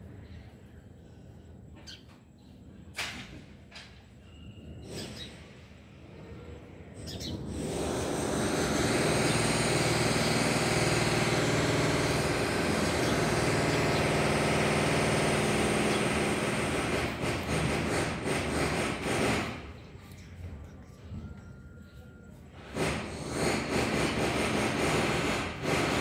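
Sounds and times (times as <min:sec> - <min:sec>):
birds chirping: 0:06.9 - 0:07.8, 0:11.6 - 0:22.4
motor running: 0:07.6 - 0:19.6.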